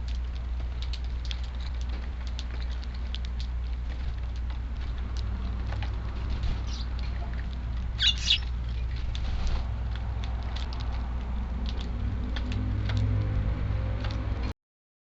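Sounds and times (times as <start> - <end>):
sparrows pecking and hopping: 0.0 - 14.5
wind rumble on microphone: 0.0 - 14.5
sparrows chirping: 6.5 - 9.0.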